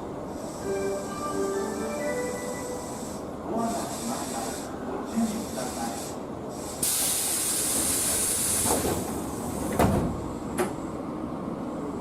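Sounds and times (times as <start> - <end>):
low rumble of rail equipment: 0.0 - 12.0
compressed air hissing: 2.7 - 9.6.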